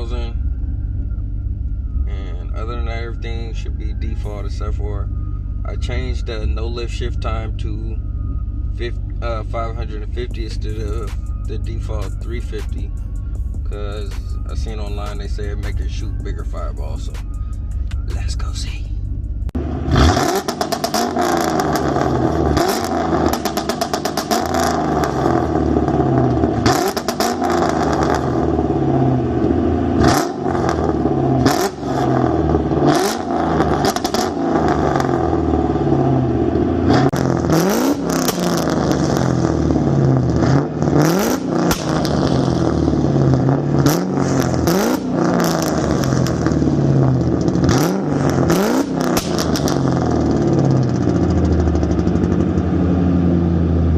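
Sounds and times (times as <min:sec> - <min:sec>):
car engine revving hard: 0:19.6 - 0:53.9
exhaust pops and bangs: 0:37.1 - 0:39.3, 0:41.6 - 0:52.7.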